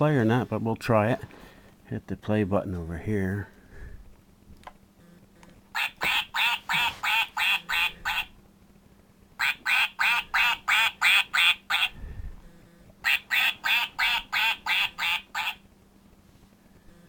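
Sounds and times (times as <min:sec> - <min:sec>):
duck quacking: 0:05.8 - 0:08.4, 0:09.4 - 0:12.0, 0:13.0 - 0:15.6.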